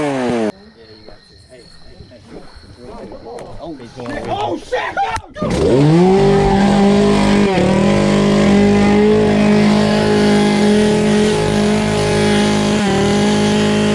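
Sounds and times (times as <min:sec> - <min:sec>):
chainsaw at full throttle: 0:00.0 - 0:00.5, 0:05.4 - 0:13.9.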